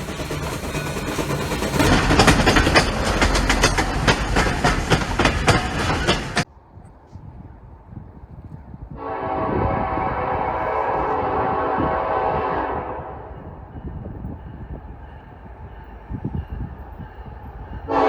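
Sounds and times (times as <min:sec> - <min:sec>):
train wheels clattering on rails: 0:00.0 - 0:06.5, 0:13.1 - 0:18.0.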